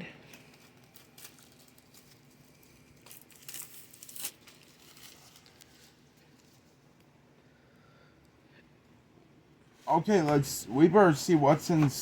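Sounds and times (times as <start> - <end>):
plastic wrapping crinkling and tearing: 0.2 - 6.8.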